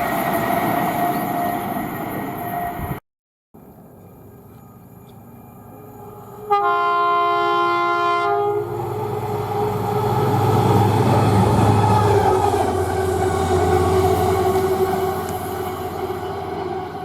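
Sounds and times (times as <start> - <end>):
train rumbling past: 0.0 - 3.0, 3.6 - 17.0
train horn blast: 6.4 - 11.0.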